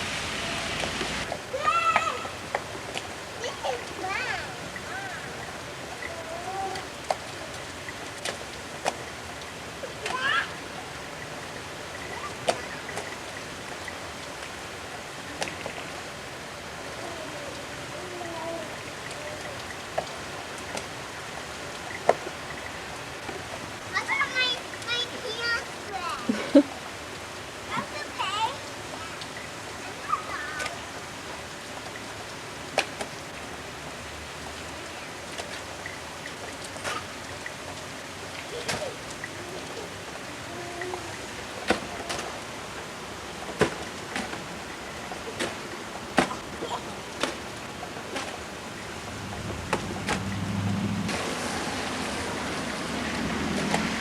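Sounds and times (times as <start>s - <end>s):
sharp drips: 0.0s - 54.0s
steady rain hiss: 0.0s - 54.0s.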